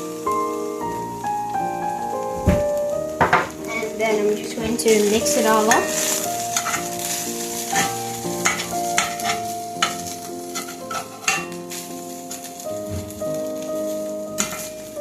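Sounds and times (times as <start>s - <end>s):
noodles sizzling in a frying pan: 0.0s - 15.0s
soft background music: 0.0s - 15.0s
utensil scraping a pan: 3.4s - 12.5s, 13.8s - 14.9s.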